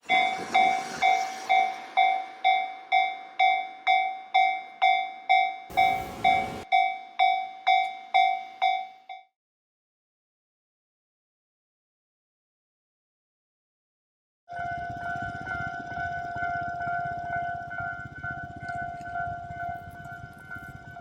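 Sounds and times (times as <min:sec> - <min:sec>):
level-crossing warning bell: 0:00.0 - 0:09.3, 0:14.5 - 0:21.0.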